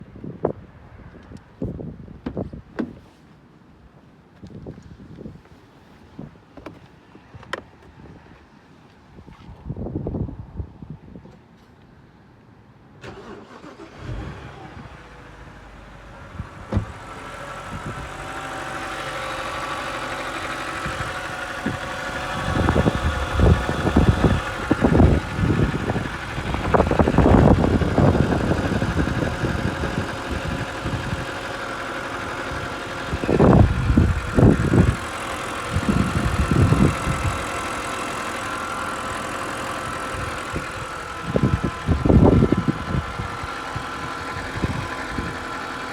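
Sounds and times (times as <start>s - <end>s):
loud irregular engine bursts: 13.0s - 45.9s
engine idling with whine: 13.1s - 45.9s.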